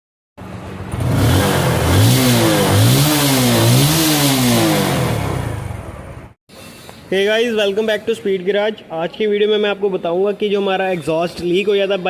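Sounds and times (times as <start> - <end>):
motorcycle engine revving: 0.4 - 6.4.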